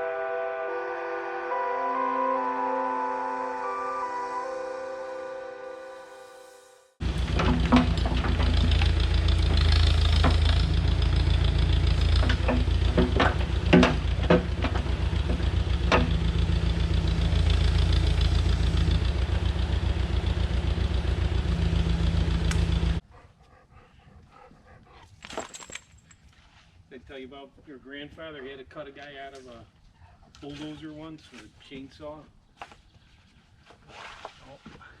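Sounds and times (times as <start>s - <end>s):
heavy equipment engine running: 7.0s - 23.0s
sharp knocks: 12.1s - 16.4s.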